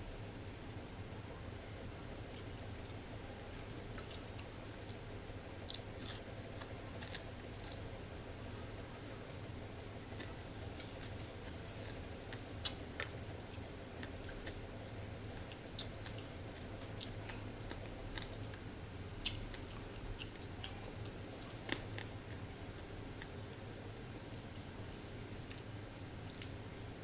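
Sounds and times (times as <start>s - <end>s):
person chewing: 3.8s - 7.9s, 10.0s - 14.7s, 15.3s - 23.3s, 25.5s - 26.6s.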